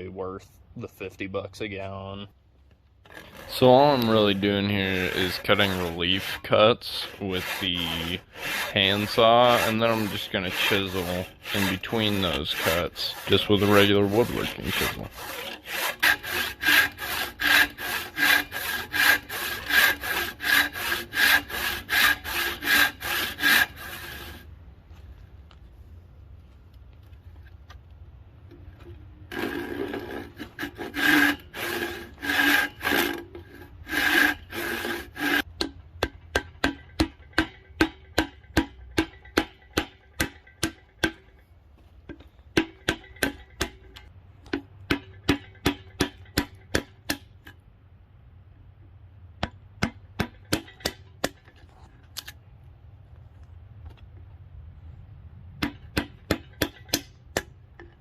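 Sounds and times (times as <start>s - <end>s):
handsaw cutting wood: 3.0s - 24.5s, 29.3s - 35.5s
chisel being struck: 35.6s - 41.3s, 42.5s - 47.3s, 49.4s - 51.4s, 55.6s - 57.9s.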